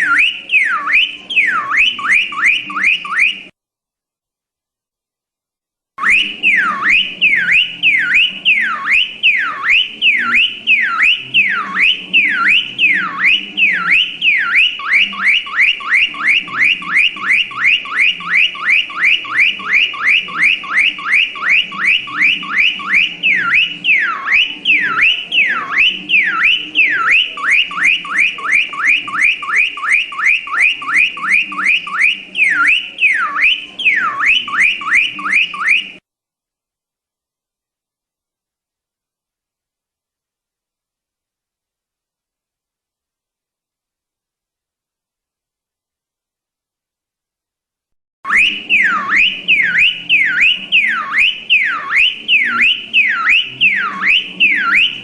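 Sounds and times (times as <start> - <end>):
car alarm siren: 0.0 - 3.5, 6.0 - 36.0, 48.3 - 55.0.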